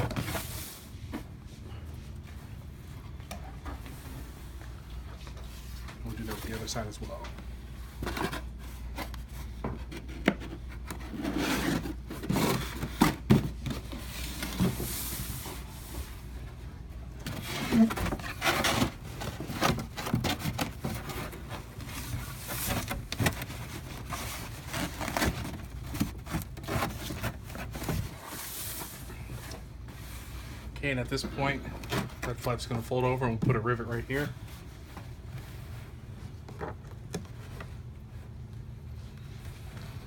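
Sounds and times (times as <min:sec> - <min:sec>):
cardboard rubbing and scraping: 0:08.0 - 0:15.9, 0:17.2 - 0:30.8.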